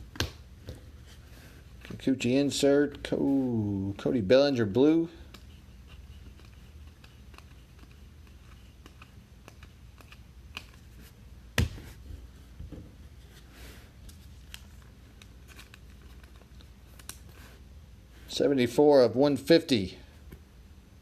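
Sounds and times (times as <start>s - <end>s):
trading cards being flipped: 5.3s - 11.9s, 14.0s - 17.5s.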